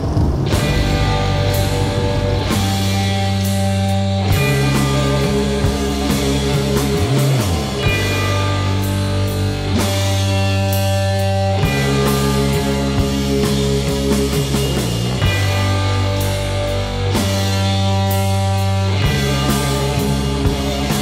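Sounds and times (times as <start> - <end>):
rock music with heavy guitar: 0.0 - 21.0.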